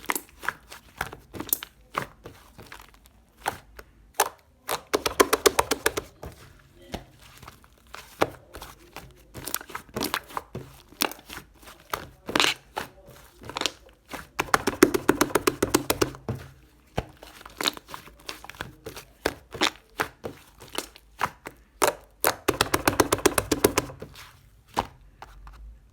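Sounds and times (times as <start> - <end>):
slime crackling rapidly: 4.6 - 24.4.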